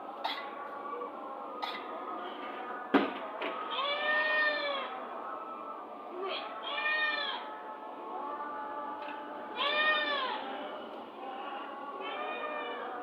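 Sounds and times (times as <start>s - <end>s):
cat meowing: 3.8s - 4.9s, 6.3s - 7.4s, 12.0s - 12.9s.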